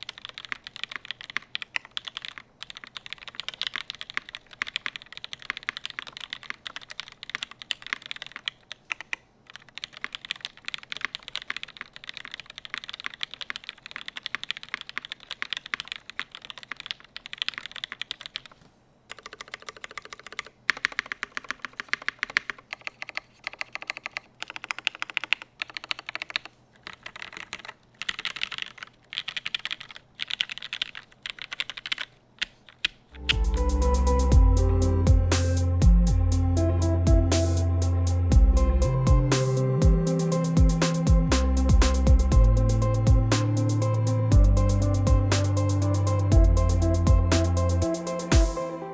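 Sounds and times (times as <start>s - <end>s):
mechanical keyboard typing clacks: 0.0s - 33.4s.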